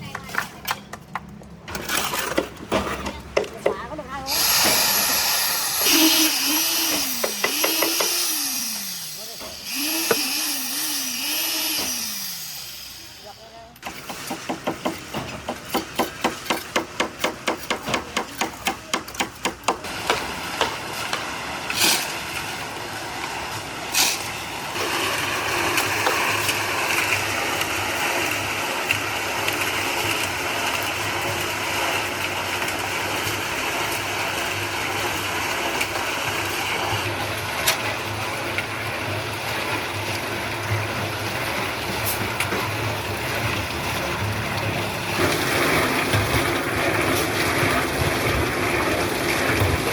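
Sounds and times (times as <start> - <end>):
machine humming and rushing: 4.3 - 13.4.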